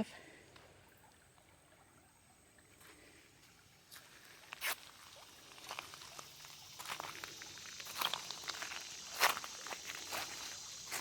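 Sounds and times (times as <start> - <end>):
footsteps: 3.9 - 11.0.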